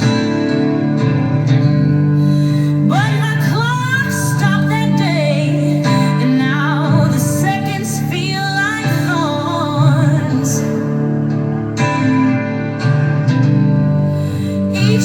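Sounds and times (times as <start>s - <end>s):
woman singing with vibrato: 2.5s - 11.2s, 14.3s - 15.0s.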